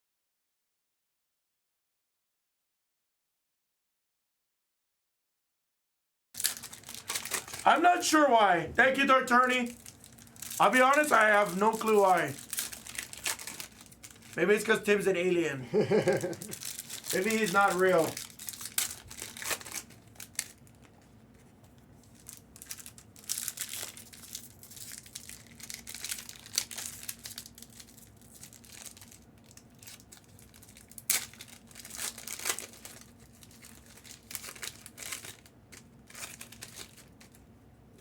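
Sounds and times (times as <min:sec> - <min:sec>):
foil wrappers crinkling and tearing: 0:06.4 - 0:37.5.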